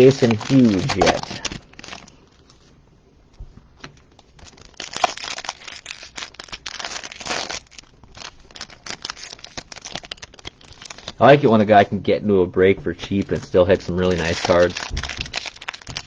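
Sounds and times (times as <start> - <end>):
foil wrappers crinkling: 0.0 - 2.8, 3.7 - 16.0.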